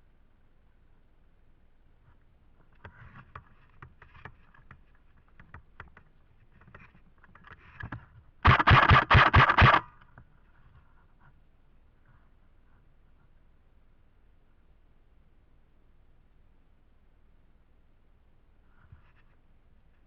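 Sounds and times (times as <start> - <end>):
airsoft gun burst: 8.4 - 10.0.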